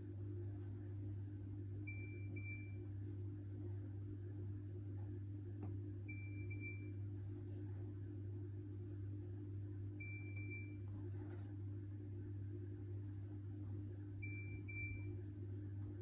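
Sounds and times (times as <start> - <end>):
steady low hum: 0.0 - 16.0
washing machine short high beeps: 1.8 - 2.9, 6.1 - 7.0, 10.0 - 10.9, 14.2 - 15.2.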